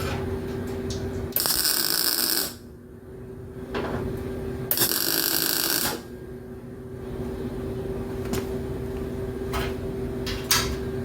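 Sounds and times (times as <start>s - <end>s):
welder transformer humming: 0.0s - 11.0s
loud crackling welding arc: 1.3s - 2.6s, 4.7s - 6.1s.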